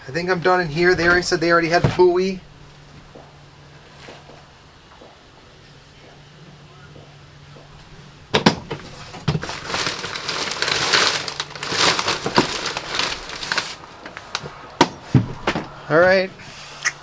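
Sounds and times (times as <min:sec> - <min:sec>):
bags rustling and crinkling: 0:00.0 - 0:04.5, 0:07.7 - 0:16.3.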